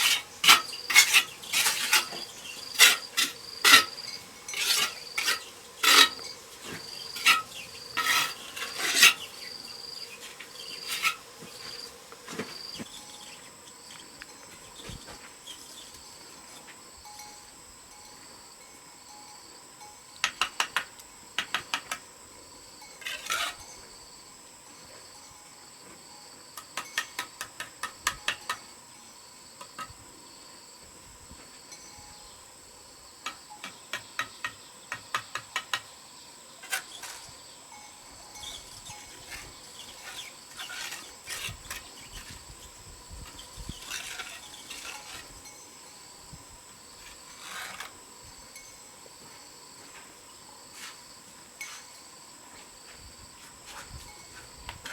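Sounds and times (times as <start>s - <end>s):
rough scraping: 0.0s - 12.9s, 23.0s - 23.7s, 36.6s - 37.4s, 38.4s - 45.6s, 47.0s - 48.0s
insects chirring: 0.0s - 54.9s.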